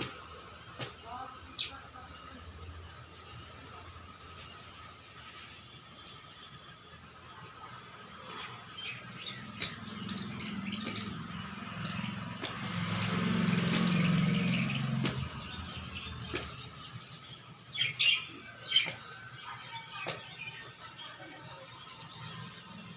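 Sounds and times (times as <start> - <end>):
budgerigars chirping: 8.9 - 19.0.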